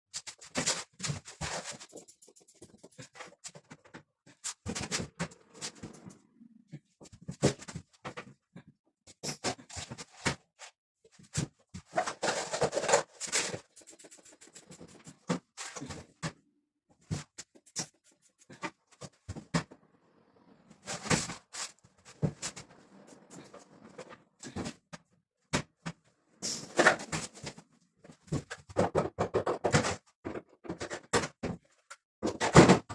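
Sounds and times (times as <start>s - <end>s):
hard objects clicking and scraping: 11.8s - 16.2s.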